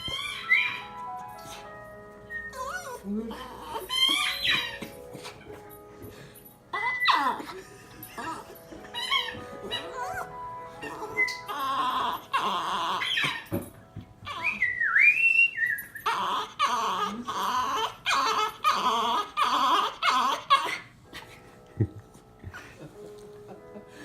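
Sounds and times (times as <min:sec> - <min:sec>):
music playing: 0:00.0 - 0:14.6
dog howling: 0:09.0 - 0:13.4.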